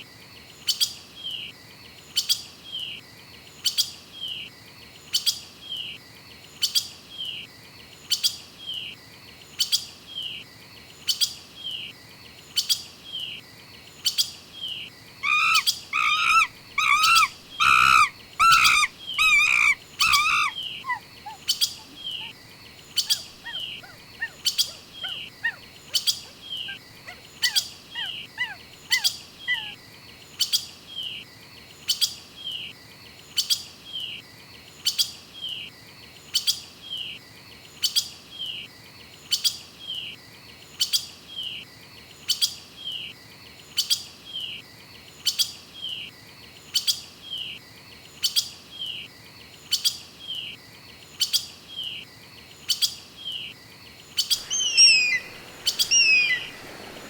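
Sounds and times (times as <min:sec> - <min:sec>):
bird calling with sharp clicks: 0:15.2 - 0:22.3, 0:22.9 - 0:29.7, 0:54.3 - 0:57.0
bird giving falling whistles: 0:15.2 - 0:22.3, 0:54.4 - 0:57.0.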